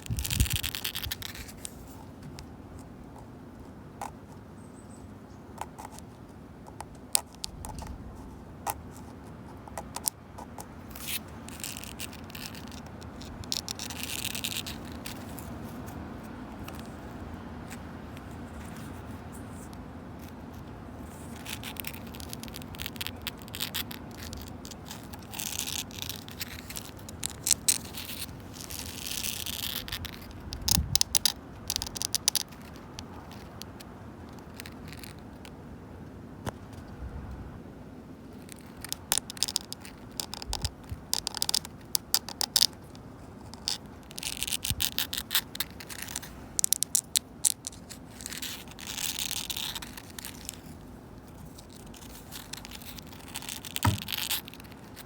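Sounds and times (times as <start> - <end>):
fingernails scratching wood: 51.3 - 55.0.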